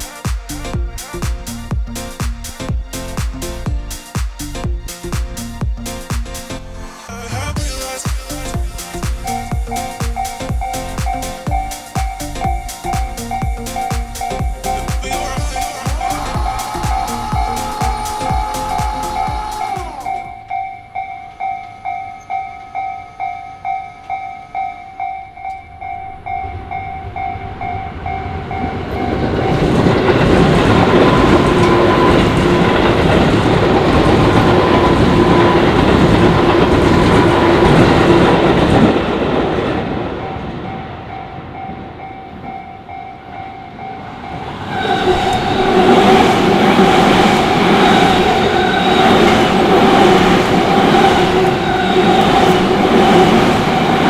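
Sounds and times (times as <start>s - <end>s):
level crossing bell ringing: 9.2s - 27.8s
train wheel clatter and rumble: 26.4s - 42.6s, 44.7s - 54.0s.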